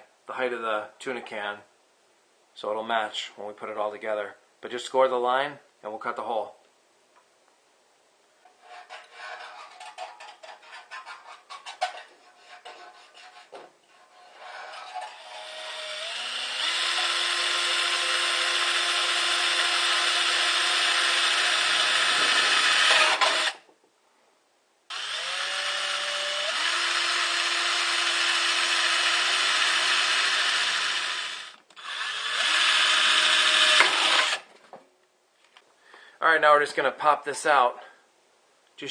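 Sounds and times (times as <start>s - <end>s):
power tool motor whining: 15.1s - 23.6s, 24.9s - 34.5s.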